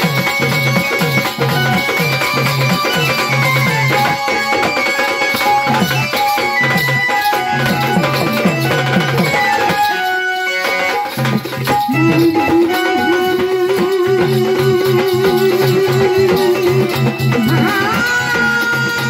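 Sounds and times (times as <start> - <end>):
melody instrument: 1.4 - 18.2
hand drum strokes: 10.8 - 19.0.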